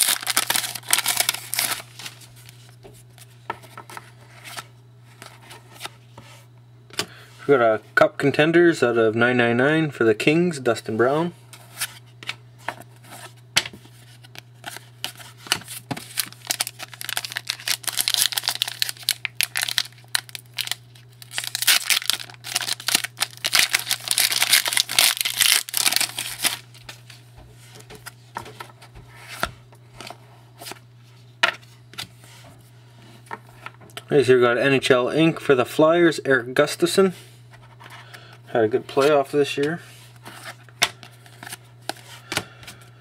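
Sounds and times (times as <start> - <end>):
foil wrapper tearing and crinkling: 0.0 - 2.4, 16.0 - 26.7.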